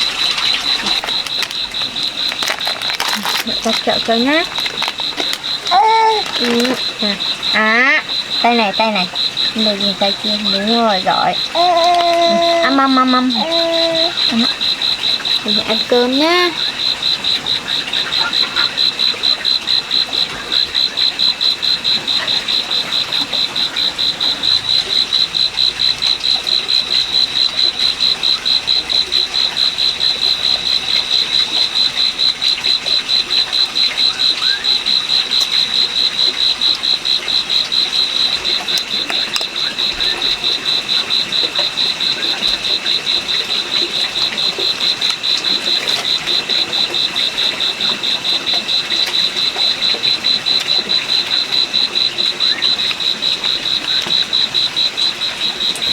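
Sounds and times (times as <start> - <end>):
small animal chirping: 0.7 - 14.8.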